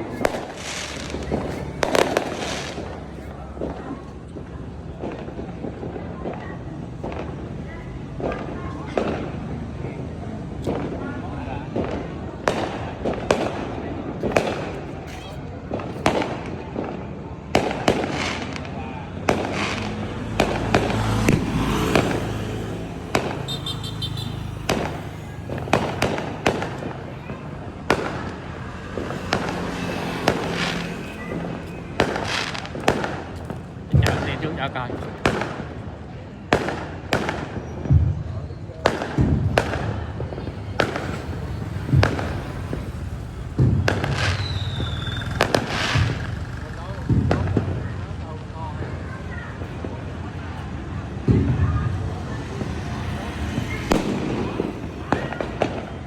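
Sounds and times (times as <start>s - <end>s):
firework bangs: 0.0s - 56.0s
firework high whistle: 23.1s - 28.1s, 38.8s - 47.7s
high twittering: 40.3s - 47.5s.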